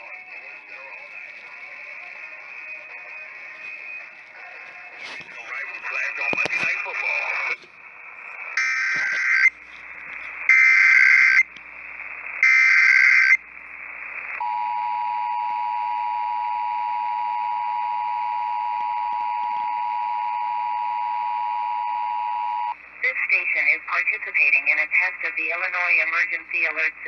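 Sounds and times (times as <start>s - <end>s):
radio hiss: 0.0s - 14.5s, 22.6s - 27.0s.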